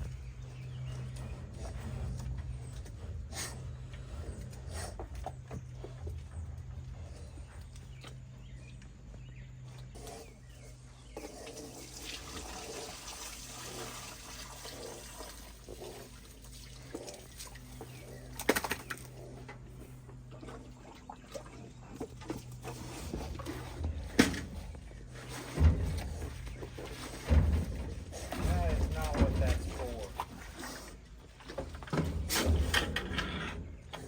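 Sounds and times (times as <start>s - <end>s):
steady low hum: 0.0s - 34.0s
water pouring into container: 11.8s - 15.7s.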